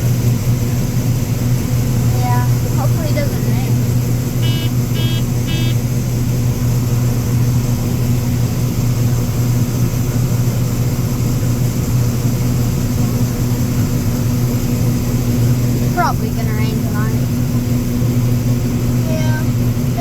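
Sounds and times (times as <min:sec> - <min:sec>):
machinery engine droning: 0:00.0 - 0:20.0
short electronic beep: 0:04.4 - 0:05.8.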